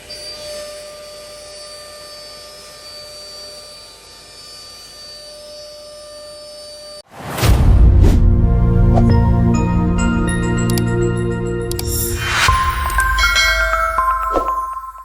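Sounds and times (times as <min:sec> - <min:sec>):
music: 0:07.7 - 0:15.0
rushing sweep: 0:11.7 - 0:15.0.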